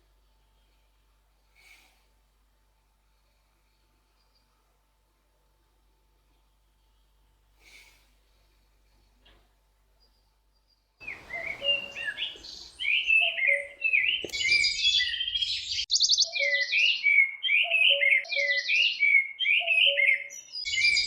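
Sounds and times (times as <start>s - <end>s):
songbird chirps and trills: 9.8s - 21.0s.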